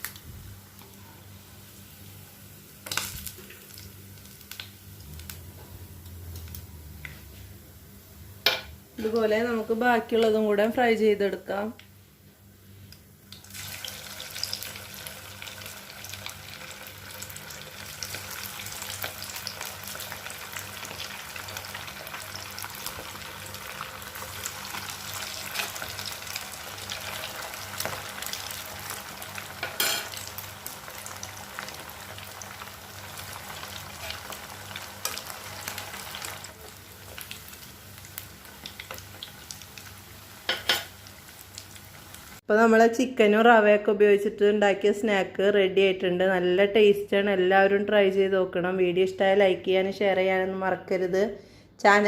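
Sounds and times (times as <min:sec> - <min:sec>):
food deep-frying in oil: 0:02.8 - 0:07.0, 0:13.3 - 0:42.5.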